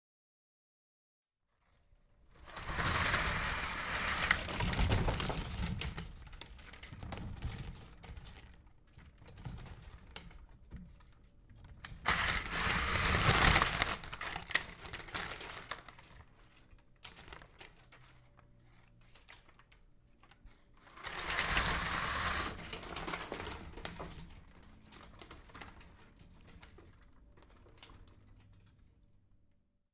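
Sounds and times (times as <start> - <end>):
window blinds rattling: 2.3 - 10.4, 12.0 - 18.3, 20.8 - 28.8.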